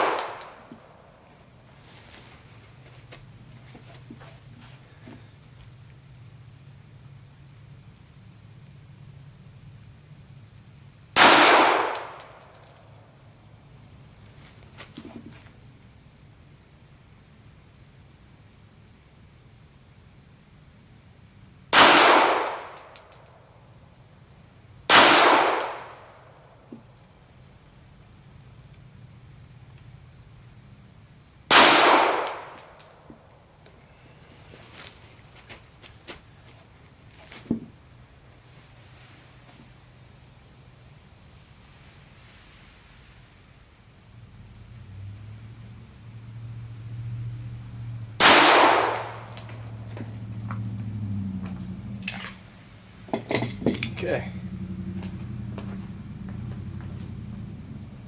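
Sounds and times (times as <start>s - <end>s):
pistol shots with echo: 0.0s - 0.7s, 11.2s - 12.4s, 21.8s - 22.8s, 24.9s - 26.0s, 31.5s - 32.6s, 48.2s - 49.3s.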